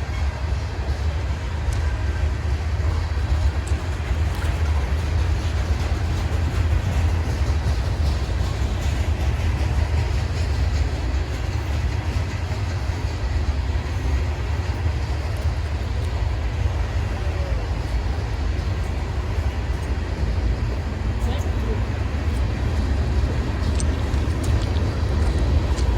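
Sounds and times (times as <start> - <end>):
freight train rumbling past: 0.0 - 25.9.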